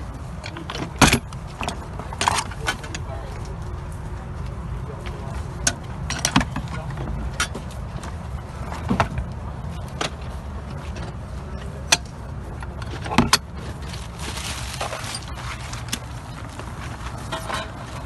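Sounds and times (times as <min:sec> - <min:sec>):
short rustle: 0:13.6 - 0:18.0.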